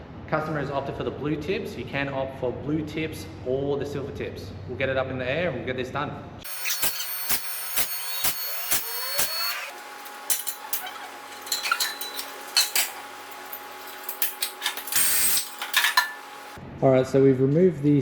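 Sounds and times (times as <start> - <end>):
metal clinks of tools: 6.5 - 16.6
steady hum: 6.5 - 16.6.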